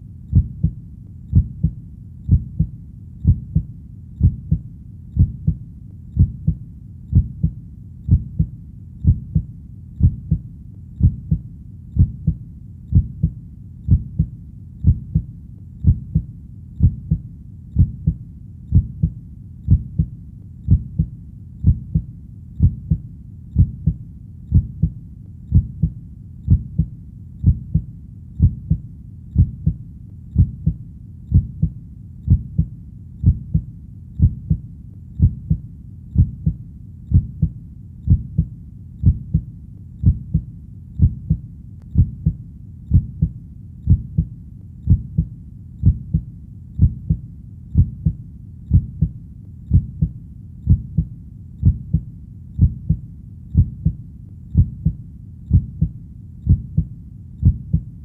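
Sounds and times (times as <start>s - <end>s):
heartbeat thumps: 0.3s - 5.6s, 6.2s - 58.0s.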